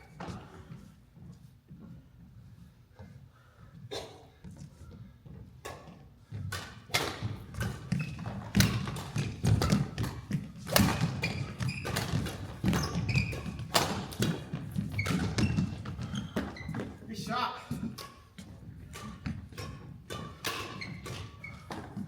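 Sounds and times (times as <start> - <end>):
footsteps thudding on court: 4.4 - 17.0
racket striking shuttlecock: 6.5 - 15.7, 18.9 - 22.0.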